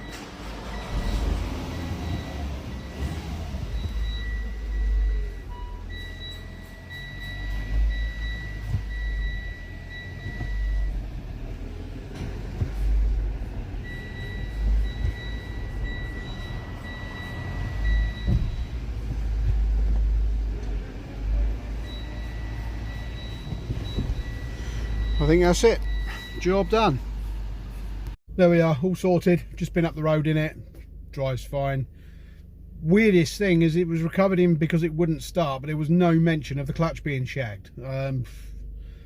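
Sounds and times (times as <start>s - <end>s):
car warning chime beeps: 0.0s - 27.9s
car engine low rumble: 0.0s - 39.0s.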